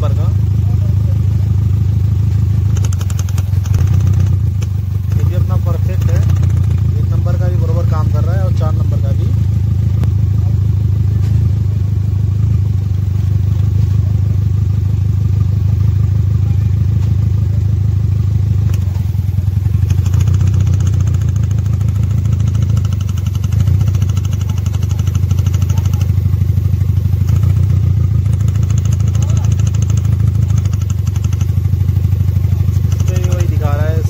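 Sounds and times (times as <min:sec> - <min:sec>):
car engine idling unevenly: 0:00.0 - 0:34.0
rapid fine ticking: 0:02.6 - 0:08.2, 0:18.7 - 0:34.0.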